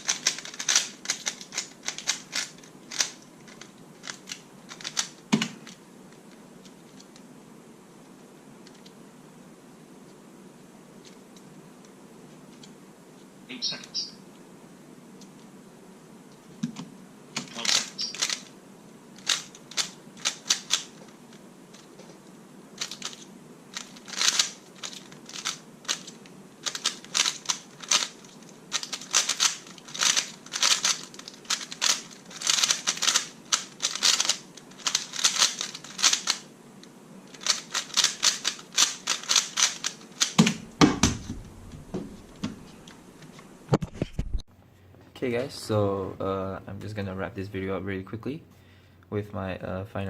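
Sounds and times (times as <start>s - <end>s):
plastic cube clicks and clacks: 0.0s - 5.8s
dull thuds: 40.4s - 42.7s.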